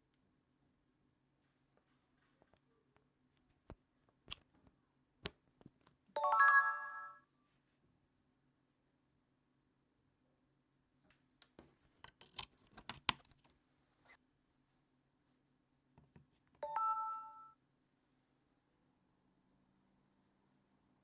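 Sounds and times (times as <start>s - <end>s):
phone charging chime: 6.2s - 7.2s, 16.6s - 17.6s.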